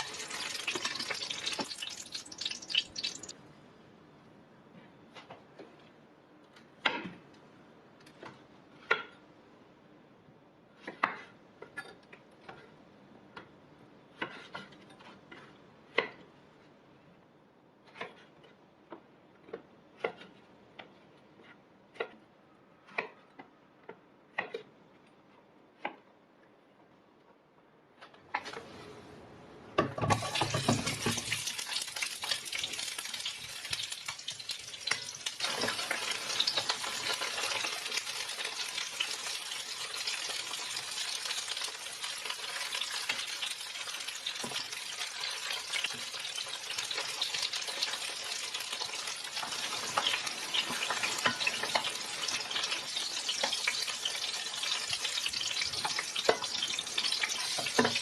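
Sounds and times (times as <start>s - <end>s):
food sizzling in oil: 0.0s - 3.4s, 30.1s - 58.0s.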